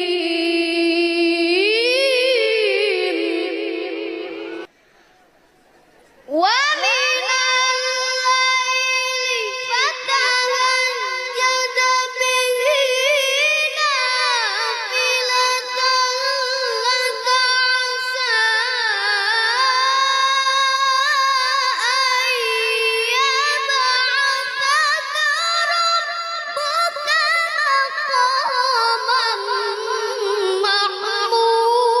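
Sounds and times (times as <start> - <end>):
child reciting melodically: 6.3 - 32.0.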